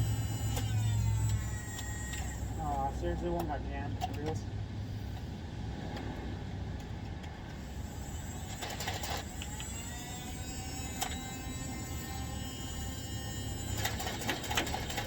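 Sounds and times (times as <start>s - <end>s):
toy blaster motor whirring: 0.0s - 2.7s, 7.6s - 15.0s.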